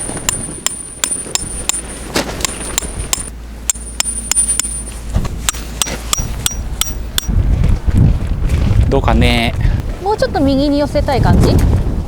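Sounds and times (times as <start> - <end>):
metal tent peg being hammered: 0.0 - 4.9, 5.5 - 7.3
wind rumble on microphone: 5.0 - 12.0.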